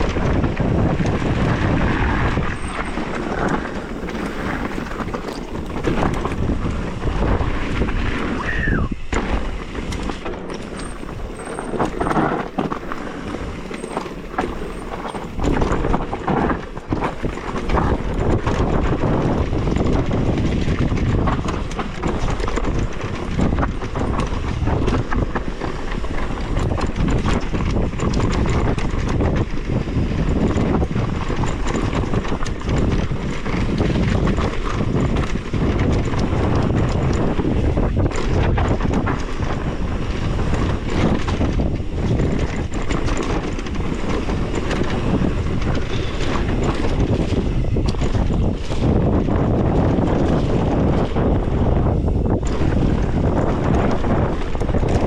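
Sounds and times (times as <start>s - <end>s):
bike rattling over bumps: 0.0s - 55.0s
bike tyres on dirt: 0.0s - 55.0s
brief squeal: 8.4s - 9.0s.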